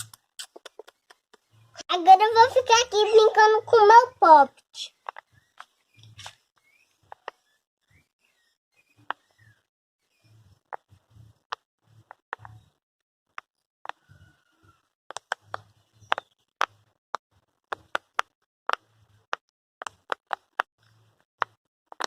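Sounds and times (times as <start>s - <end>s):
fidget toy bubbles popping: 0.0s - 1.4s.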